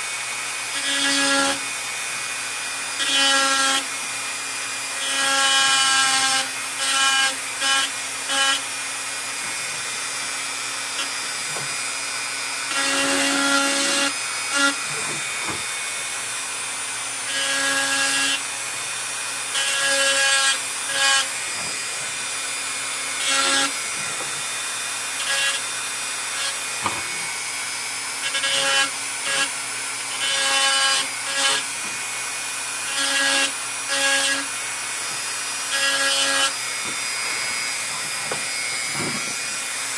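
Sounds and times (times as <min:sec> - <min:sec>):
rotary tool humming: 0:00.7 - 0:39.9
bit grinding antler: 0:34.4 - 0:39.9.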